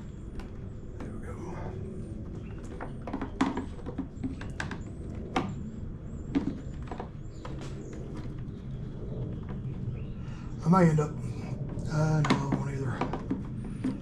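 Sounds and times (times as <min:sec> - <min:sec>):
steady low hum: 0:00.0 - 0:14.0
hand tools clicking and knocking: 0:11.8 - 0:14.0.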